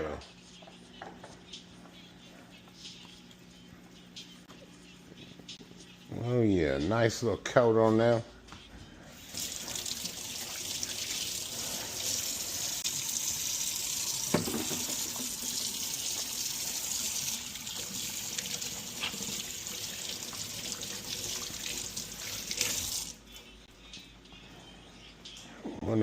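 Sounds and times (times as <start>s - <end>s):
tap running into sink: 14.2s - 16.3s
knock: 14.3s - 15.1s.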